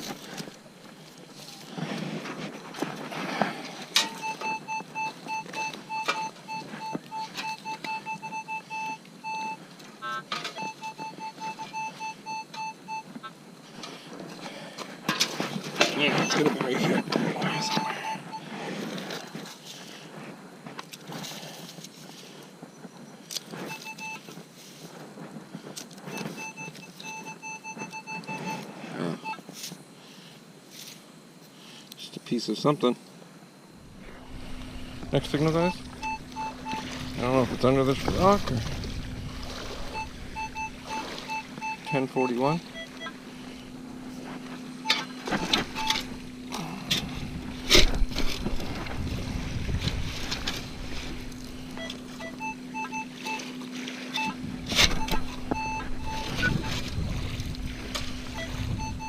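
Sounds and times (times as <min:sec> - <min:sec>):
metal detector buzzing tone: 0:04.0 - 0:13.3, 0:15.9 - 0:18.5, 0:26.1 - 0:29.4, 0:33.8 - 0:59.0
shallow water splashing: 0:33.8 - 0:46.4, 0:47.0 - 0:59.0.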